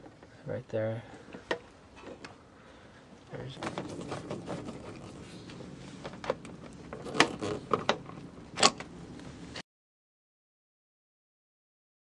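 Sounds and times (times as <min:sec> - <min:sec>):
low background hiss: 0:00.0 - 0:09.6
handling clicks and knocks: 0:03.5 - 0:05.2.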